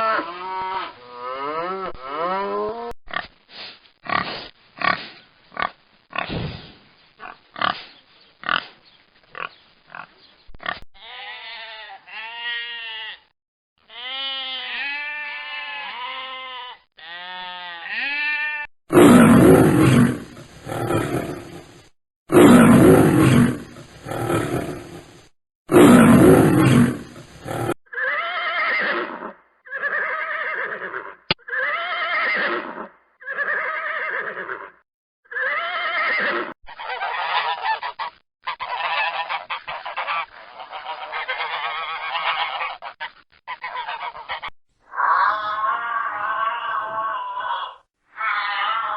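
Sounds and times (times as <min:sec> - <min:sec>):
geese honking: 0:36.8 - 0:44.5.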